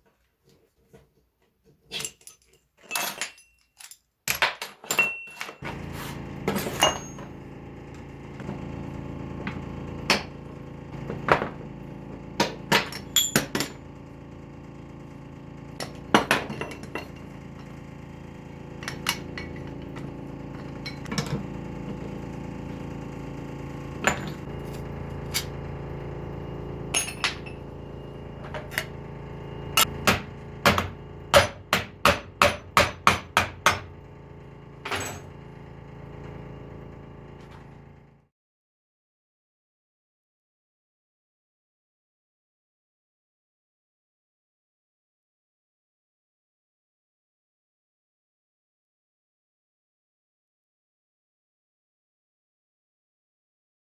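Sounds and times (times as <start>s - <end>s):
metal parts knocking and clinking: 1.9s - 5.7s, 12.4s - 13.8s, 24.0s - 25.6s, 26.9s - 27.7s, 28.4s - 28.9s, 34.8s - 35.4s
steady hum: 7.2s - 38.0s.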